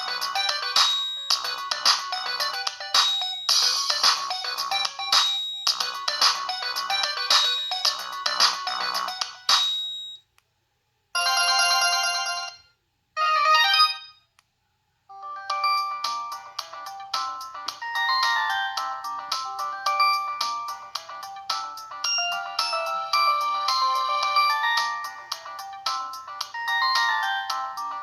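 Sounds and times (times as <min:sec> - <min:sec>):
fast electronic ringtone melody: 0:00.0 - 0:10.1, 0:15.2 - 0:28.0
chiming phone tones: 0:00.0 - 0:10.2, 0:11.2 - 0:14.2, 0:21.9 - 0:25.6.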